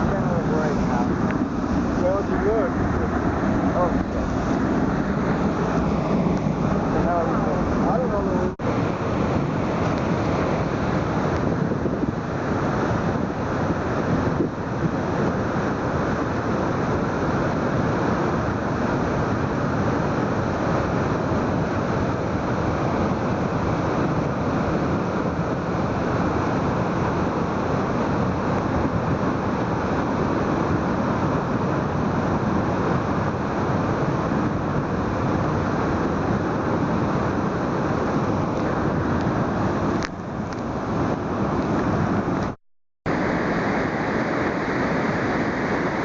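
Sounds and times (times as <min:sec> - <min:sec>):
waterfall rushing: 0:00.0 - 0:22.0, 0:43.1 - 0:46.0.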